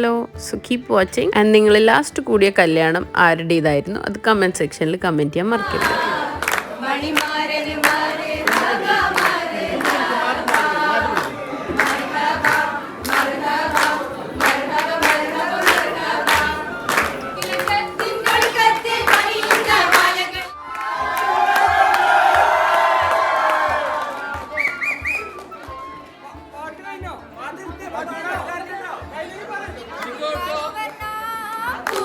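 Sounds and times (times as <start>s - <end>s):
group of voices singing: 5.4s - 20.6s, 30.3s - 32.0s
hand claps: 5.6s - 25.9s, 29.9s - 32.0s.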